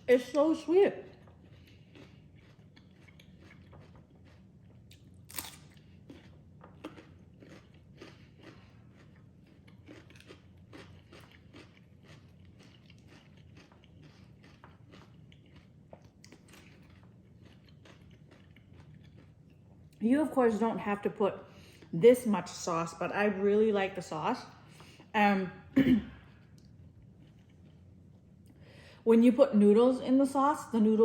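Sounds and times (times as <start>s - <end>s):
person chewing crunchy food: 1.0s - 20.0s, 26.2s - 28.6s.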